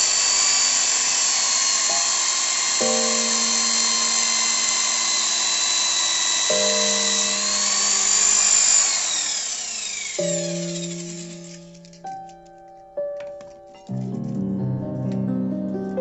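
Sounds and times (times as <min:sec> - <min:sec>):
electric drill motor whining: 0:00.0 - 0:12.4.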